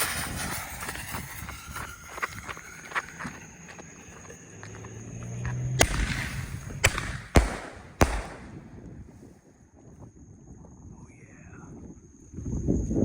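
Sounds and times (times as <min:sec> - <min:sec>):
firework bang: 0:00.0 - 0:03.5, 0:05.5 - 0:09.0
sharp firework pops: 0:04.2 - 0:09.1.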